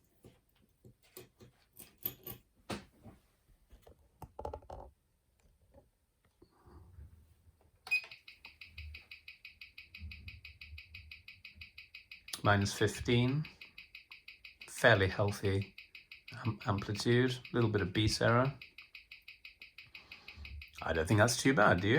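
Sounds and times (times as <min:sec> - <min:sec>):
rapid watch ticking: 0:08.1 - 0:21.9.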